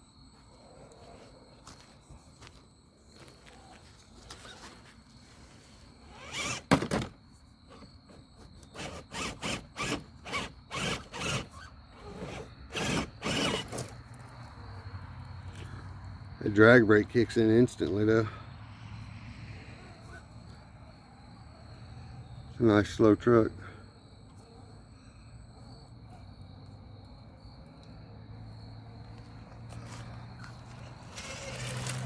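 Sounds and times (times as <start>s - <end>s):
toy truck motor whirring: 6.0s - 14.1s, 30.7s - 32.0s.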